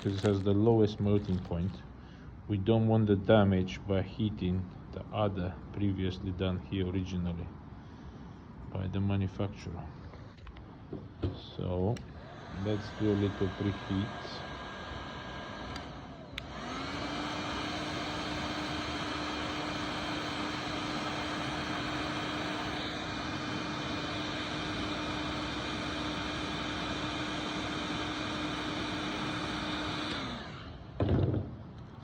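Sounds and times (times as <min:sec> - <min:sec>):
heat gun blowing air: 0:00.0 - 0:01.9, 0:12.0 - 0:31.0
loud knock: 0:31.0 - 0:31.5.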